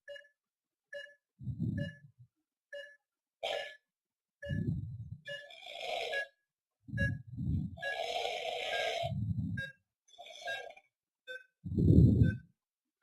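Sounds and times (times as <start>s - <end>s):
patient monitor two-tone beeps: 0.0s - 3.1s, 4.4s - 12.6s
rough snore-like breaths: 4.6s - 6.4s, 7.0s - 10.8s, 11.7s - 12.4s.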